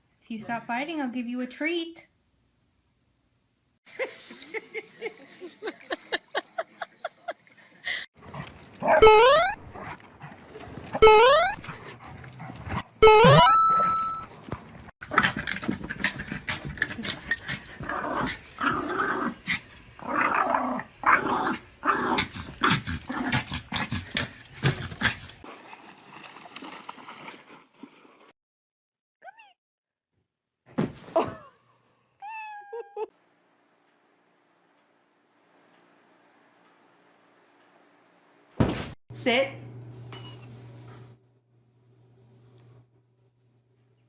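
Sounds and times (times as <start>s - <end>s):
dogs yelping: 8.8s - 9.8s
dogs growling: 15.0s - 25.4s.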